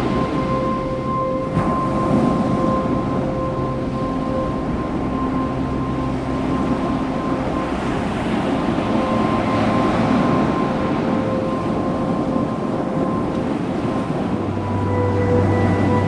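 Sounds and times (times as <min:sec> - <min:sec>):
ocean surf: 0:00.0 - 0:16.0
sustained steady tones: 0:00.0 - 0:16.0
wind on microphone: 0:00.0 - 0:16.0.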